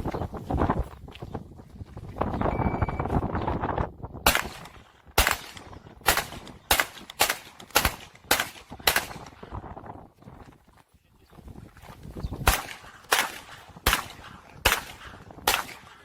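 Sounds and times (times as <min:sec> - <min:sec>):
pistol shots: 0:04.2 - 0:09.5, 0:12.4 - 0:16.0.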